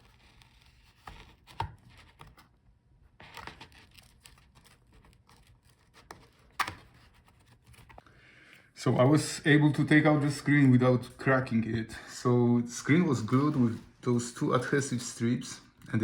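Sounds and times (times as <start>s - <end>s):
scraping and peeling of a panel: 3.2s - 8.0s.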